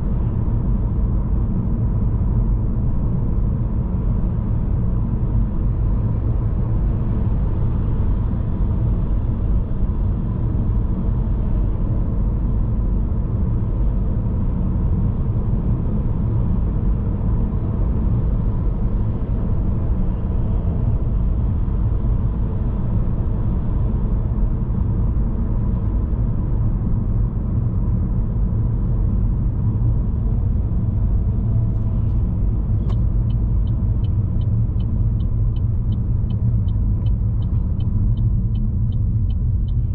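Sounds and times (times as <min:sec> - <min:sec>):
car road and engine rumble: 0:00.0 - 0:39.9.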